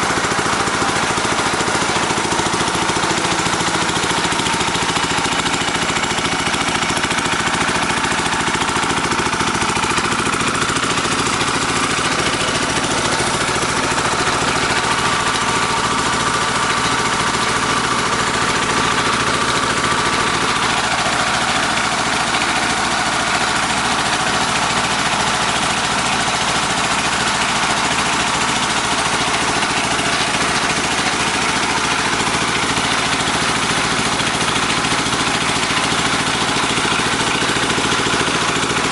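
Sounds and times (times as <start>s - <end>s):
drilling machine engine pulsing: 0.0s - 38.9s.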